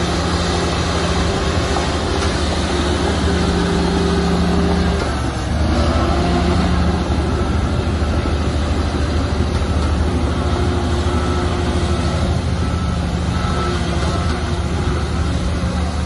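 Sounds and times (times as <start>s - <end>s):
heavy diesel engine running: 0.0s - 16.0s
faint high beeps: 6.7s - 16.0s.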